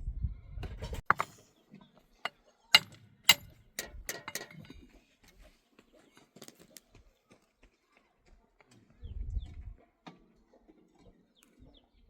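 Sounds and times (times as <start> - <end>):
hard objects knocking and clinking: 1.0 - 1.4, 2.8 - 4.8.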